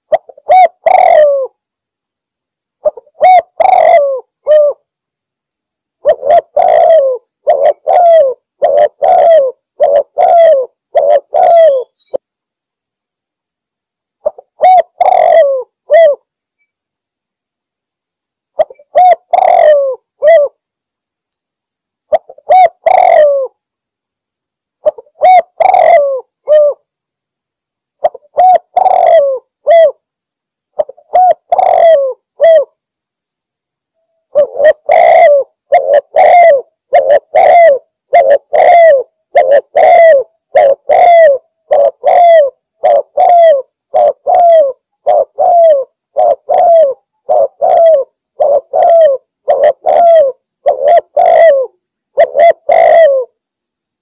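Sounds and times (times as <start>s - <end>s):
dove cooing: 0.0s - 1.6s, 2.8s - 4.8s, 6.0s - 12.2s, 14.2s - 16.2s, 18.6s - 20.6s, 22.1s - 23.6s, 24.8s - 26.8s, 28.0s - 30.0s, 30.8s - 32.7s, 34.3s - 53.4s.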